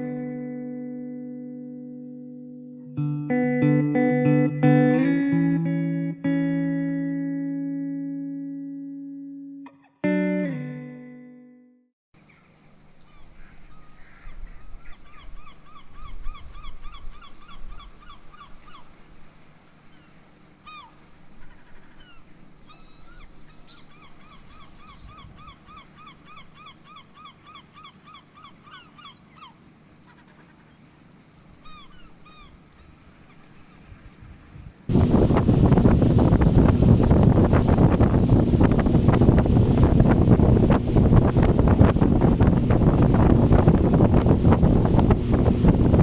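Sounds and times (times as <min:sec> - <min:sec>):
bird squeaky calls: 0:19.9 - 0:33.8
steady low hum: 0:34.9 - 0:46.0.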